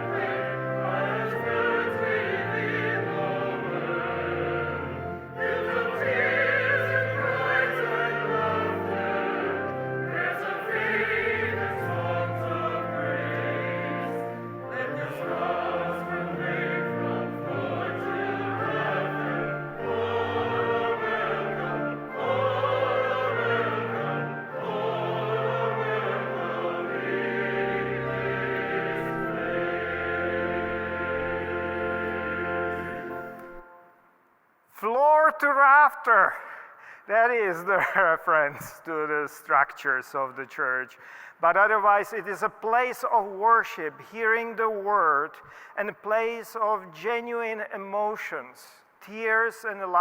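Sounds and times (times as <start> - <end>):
choir singing a hymn: 0.0 - 33.8.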